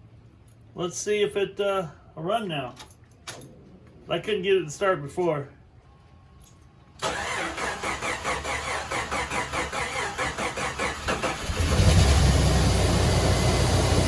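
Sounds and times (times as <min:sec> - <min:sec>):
starter motor cranking: 0:07.0 - 0:12.2.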